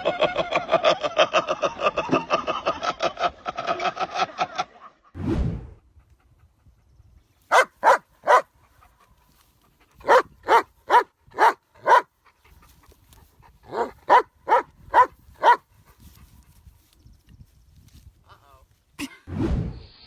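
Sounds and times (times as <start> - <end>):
dog barking: 7.5 - 8.5, 10.0 - 12.1, 13.7 - 15.6.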